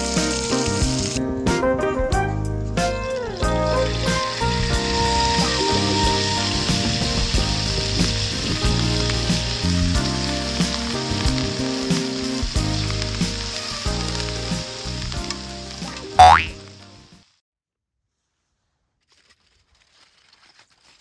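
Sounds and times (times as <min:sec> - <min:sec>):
background music with chords: 0:00.0 - 0:17.0
food sizzling on griddle: 0:03.8 - 0:17.1.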